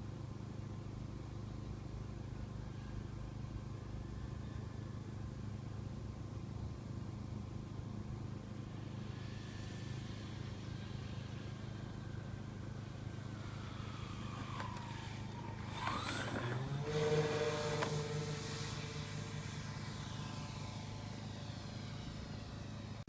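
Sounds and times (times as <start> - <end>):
model plane electric motors whining: 8.4 - 23.0.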